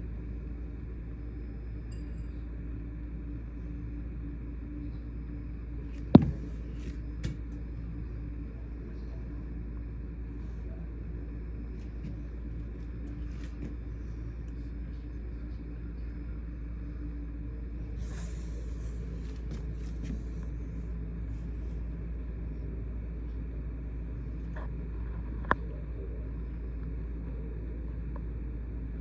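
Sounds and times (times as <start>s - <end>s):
car driving rumble: 5.9s - 7.8s.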